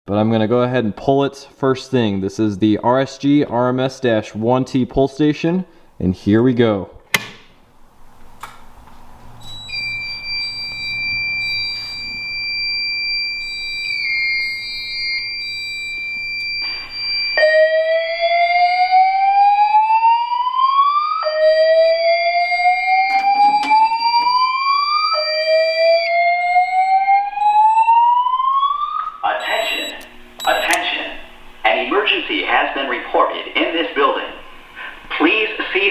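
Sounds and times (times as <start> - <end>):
high-pitched electronic alarm tone: 9.4 - 30.9
rising whoop alarm: 9.7 - 30.0.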